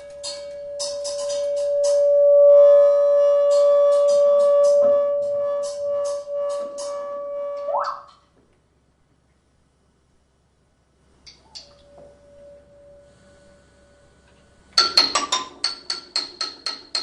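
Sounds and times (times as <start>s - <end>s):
steady electronic tone: 0.0s - 8.1s, 11.6s - 14.3s
fainter higher tone: 0.0s - 8.2s, 11.6s - 14.6s.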